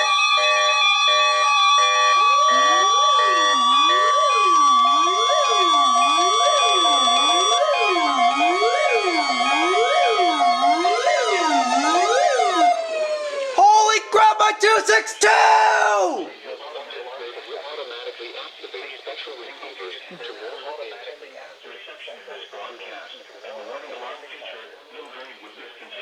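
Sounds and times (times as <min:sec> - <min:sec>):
rising and falling electronic siren: 0:00.0 - 0:13.6
steady high alarm tone: 0:00.0 - 0:16.2.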